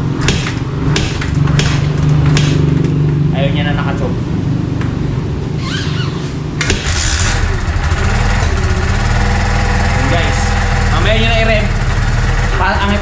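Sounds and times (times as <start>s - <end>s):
motorcycle engine running unevenly: 6.8s - 13.0s.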